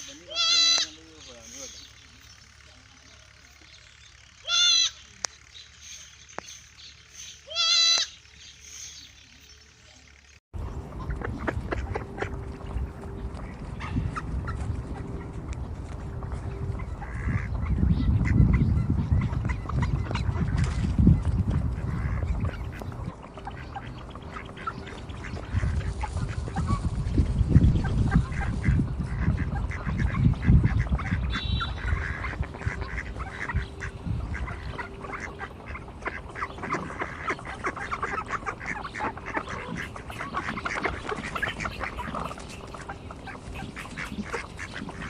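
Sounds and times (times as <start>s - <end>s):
ducks quacking: 0.0s - 45.0s
goat bleating: 0.1s - 1.0s, 4.4s - 5.0s, 7.4s - 8.2s
low rumbling noise: 8.1s - 45.0s.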